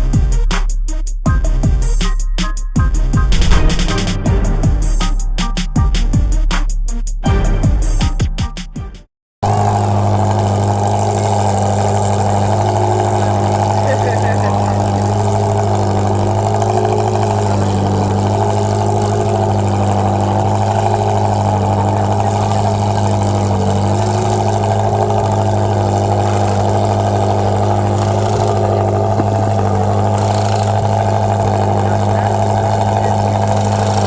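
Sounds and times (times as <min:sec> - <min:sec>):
car engine idling: 0:09.5 - 0:34.0.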